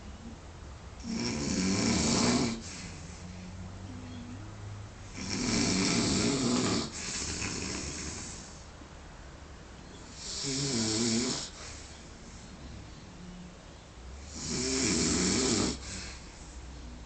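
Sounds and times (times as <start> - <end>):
man snoring heavily: 1.0 - 2.9, 5.1 - 8.6, 10.1 - 11.6, 14.2 - 16.3.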